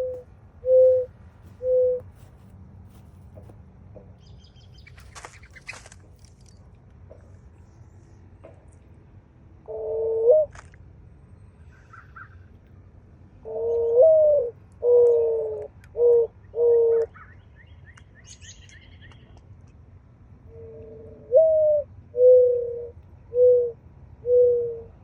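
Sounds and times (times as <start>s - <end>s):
dove cooing: 0.0s - 2.3s, 9.6s - 10.7s, 13.4s - 17.2s, 20.5s - 25.0s.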